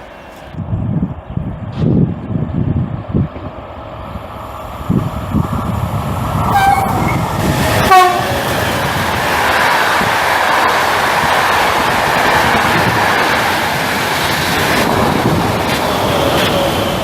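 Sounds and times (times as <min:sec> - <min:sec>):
train rumble: 0:00.0 - 0:17.0
wind buffeting microphone: 0:00.5 - 0:17.0
train horn blasts: 0:06.5 - 0:08.5.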